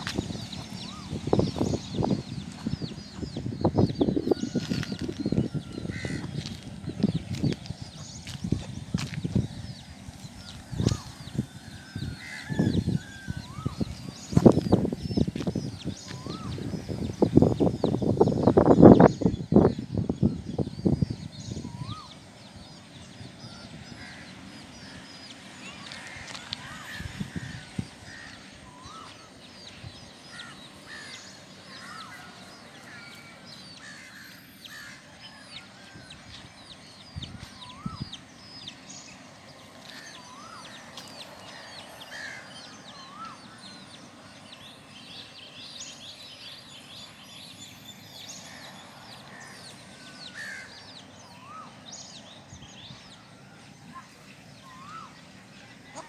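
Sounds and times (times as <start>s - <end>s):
chicks peeping: 0.0s - 21.0s.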